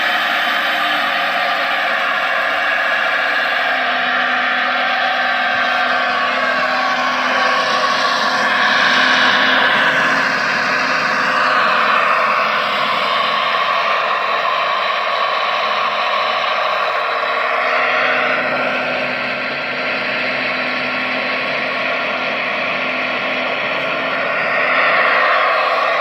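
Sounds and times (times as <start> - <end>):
model excavator motors whirring: 0.0 - 17.4.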